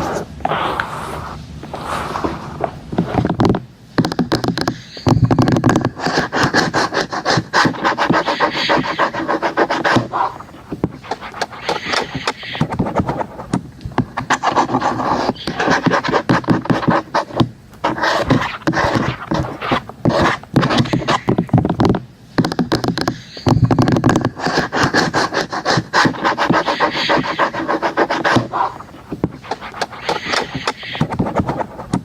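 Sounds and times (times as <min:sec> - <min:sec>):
fingers tapping on objects: 0:03.2 - 0:06.8, 0:20.1 - 0:27.5.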